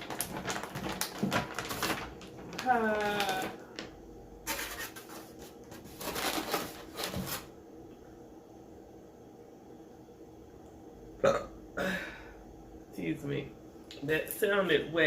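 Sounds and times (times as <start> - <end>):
rustling handling noise: 0.0 - 7.5.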